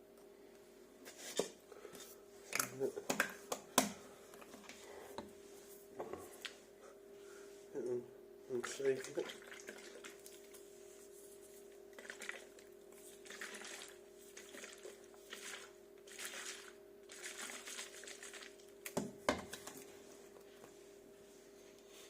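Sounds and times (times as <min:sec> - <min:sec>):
steady low hum: 0:00.0 - 0:22.0
liquid sloshing in shaken bottle: 0:08.6 - 0:10.6, 0:11.6 - 0:18.8.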